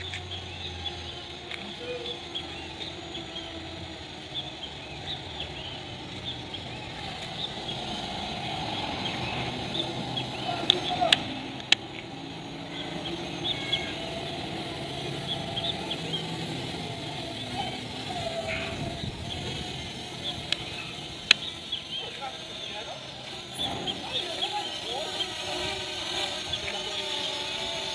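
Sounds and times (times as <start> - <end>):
bird chirps: 0.0 - 27.4
steady low hum: 0.0 - 27.9
sharp clicks: 10.6 - 12.2, 20.2 - 22.2.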